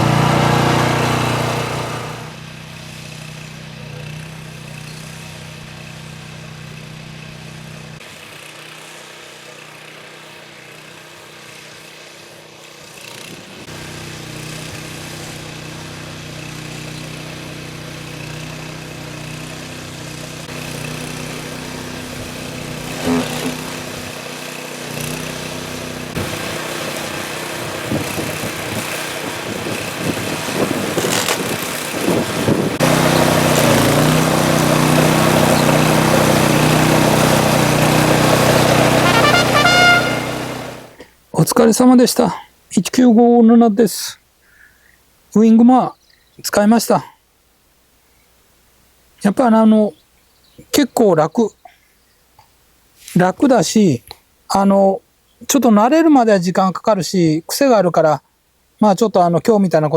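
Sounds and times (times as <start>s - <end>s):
mower cutting grass: 0.0s - 41.2s.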